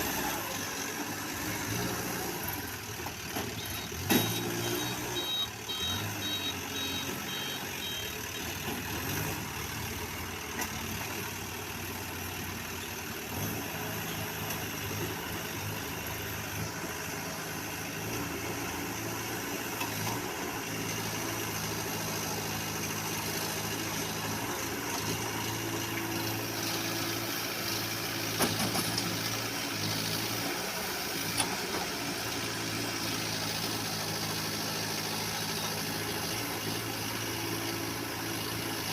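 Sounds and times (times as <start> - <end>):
diesel engine running: 0.0 - 38.9
reversing alarm beeping: 3.6 - 8.5.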